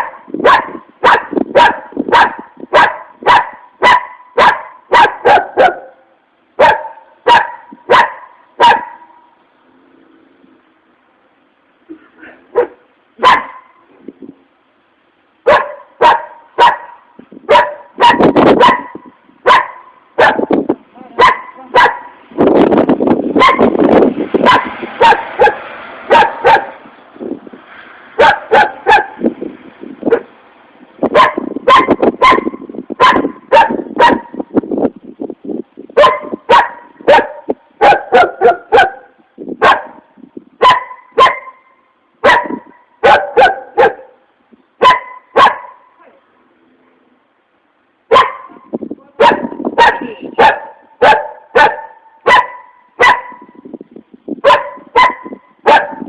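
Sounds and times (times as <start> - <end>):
dog barking: 0.0 - 6.0, 6.6 - 9.3, 12.5 - 13.8, 15.4 - 20.5, 21.2 - 22.2, 23.4 - 23.8, 24.4 - 26.8, 28.2 - 29.2, 31.1 - 34.5, 36.0 - 44.2, 44.8 - 46.0, 48.1 - 53.6, 54.4 - 56.0.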